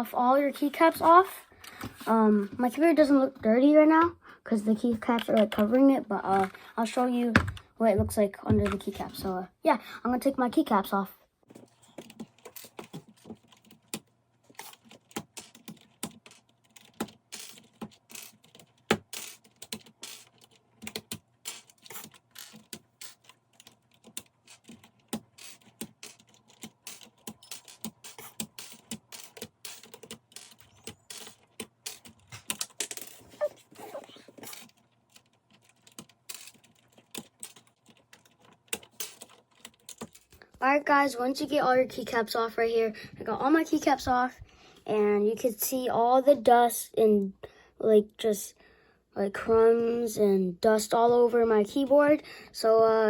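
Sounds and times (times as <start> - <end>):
plastic keycaps clicking: 12.0 - 33.3, 34.4 - 40.4.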